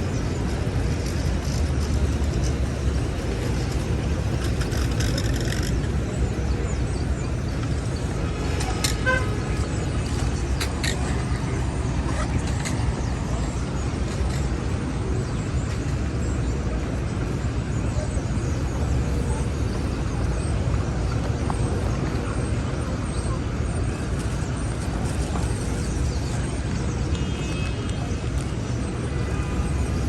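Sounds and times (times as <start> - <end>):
traffic rumble: 0.0 - 30.0
car horn toot: 8.6 - 9.4.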